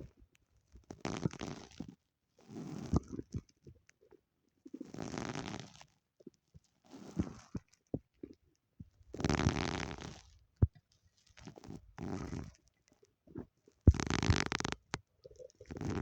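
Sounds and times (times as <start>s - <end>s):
stomach growling: 13.3s - 16.0s.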